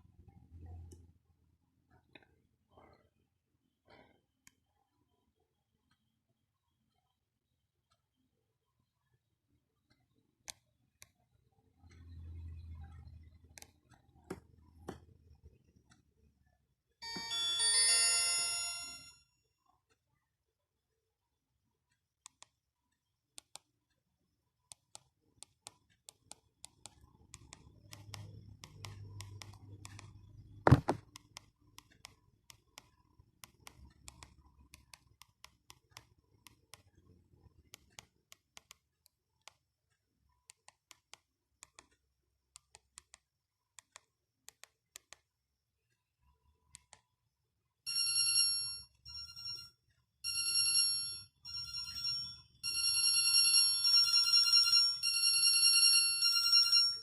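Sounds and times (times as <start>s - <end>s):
phone ringtone high tones: 17.0s - 19.3s, 47.9s - 57.0s.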